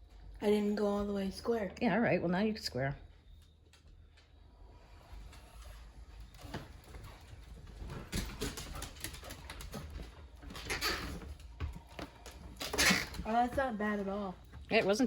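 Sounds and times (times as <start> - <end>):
wheelchair rolling: 4.2 - 15.0.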